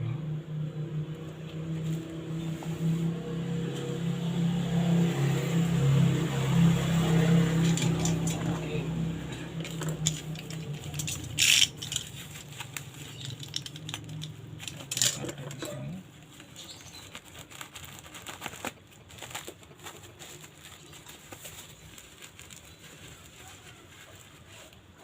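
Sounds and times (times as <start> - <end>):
cardboard parcel rustling: 7.0 - 25.0
tearing sounds: 7.1 - 25.0.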